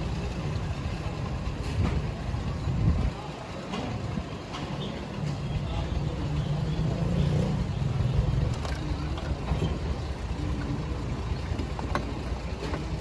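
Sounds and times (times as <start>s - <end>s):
engine running with low rumble: 5.4s - 13.0s.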